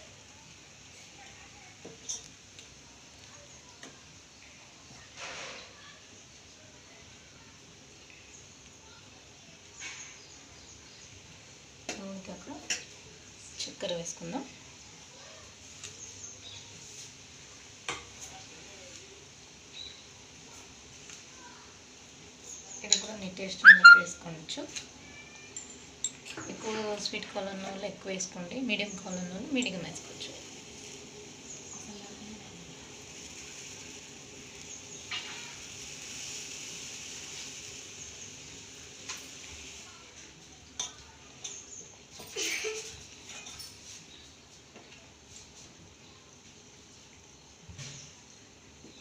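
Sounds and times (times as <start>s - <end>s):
steady low hiss: 7.3s - 49.0s
pot hissing on gas stove: 28.0s - 40.6s.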